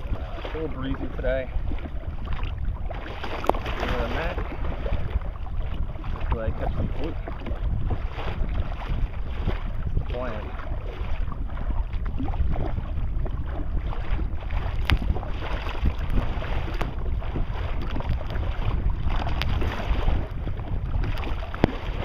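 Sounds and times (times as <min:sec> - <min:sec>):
water splashing: 0:00.0 - 0:22.0
wind buffeting microphone: 0:00.0 - 0:22.0.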